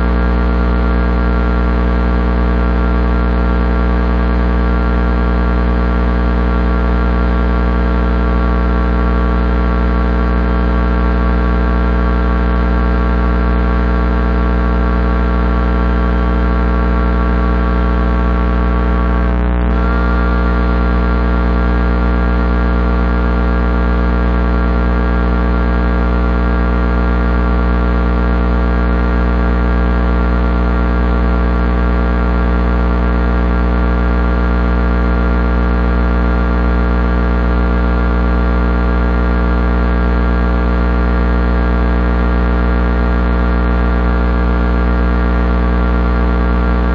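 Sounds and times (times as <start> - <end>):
electrical transformer humming: 0.0 - 1.3, 8.8 - 11.4, 15.5 - 25.7, 45.6 - 46.9.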